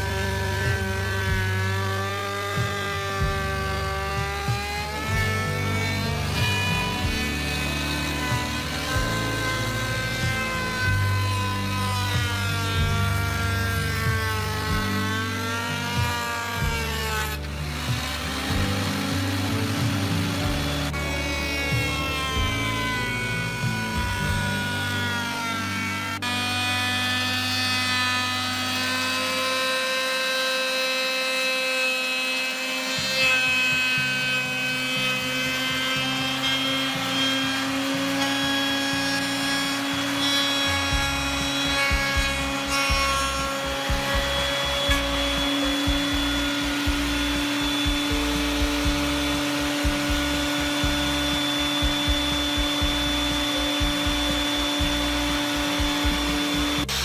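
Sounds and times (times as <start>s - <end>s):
background music: 0.0s - 57.0s
heavy low beat: 2.6s - 25.1s, 40.8s - 57.0s.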